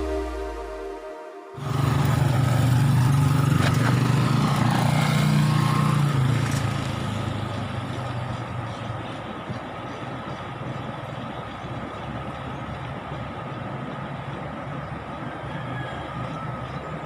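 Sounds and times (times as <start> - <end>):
song: 0.0 - 1.7
road noise: 0.0 - 17.0
vehicle engine humming: 0.0 - 17.0.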